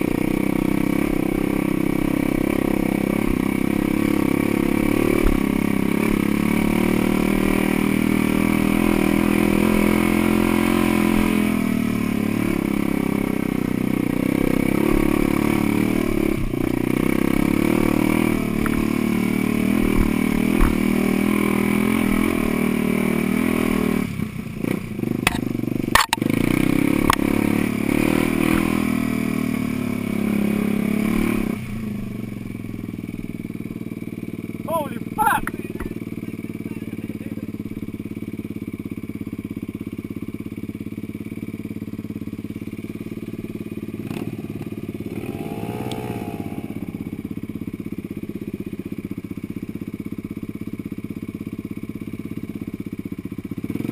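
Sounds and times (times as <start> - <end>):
off-road vehicle engine under load: 0.0 - 53.9.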